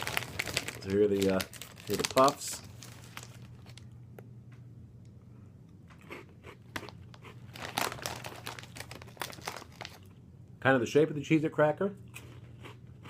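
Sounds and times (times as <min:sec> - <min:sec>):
low room hum: 0:00.0 - 0:13.0
snacks being chewed: 0:05.9 - 0:10.2.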